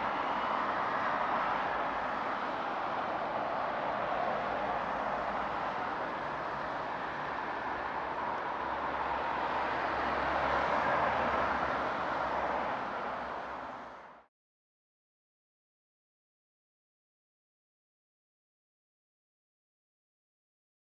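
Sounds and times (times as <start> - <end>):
street traffic noise: 0.0 - 14.3.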